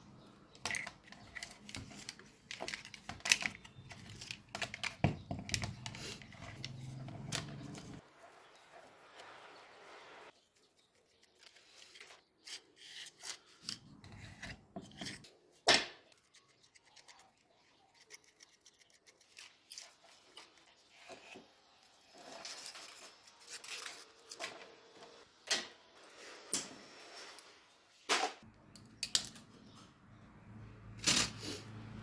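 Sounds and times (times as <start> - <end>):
small parts clicking and knocking: 0.5 - 8.0, 28.6 - 29.6.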